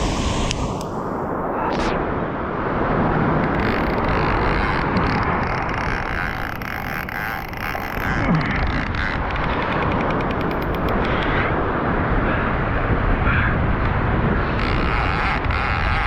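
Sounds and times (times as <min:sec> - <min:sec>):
surf breaking: 0:00.0 - 0:05.4
wind buffeting microphone: 0:00.0 - 0:16.0.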